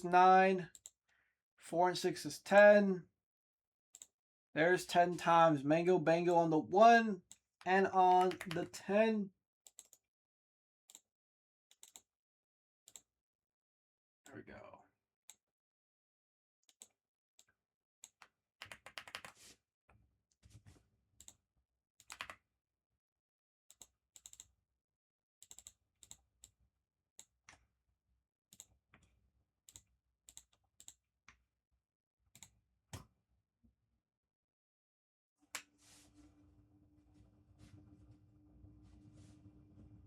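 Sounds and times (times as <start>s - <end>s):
typing on computer keyboard: 8.1s - 8.8s, 18.0s - 19.4s, 22.0s - 22.4s, 25.4s - 26.2s.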